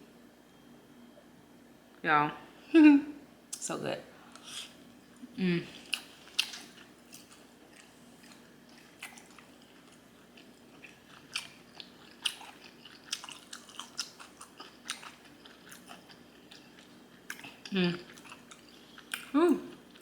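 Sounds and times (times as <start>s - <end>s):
person chewing: 5.7s - 20.0s.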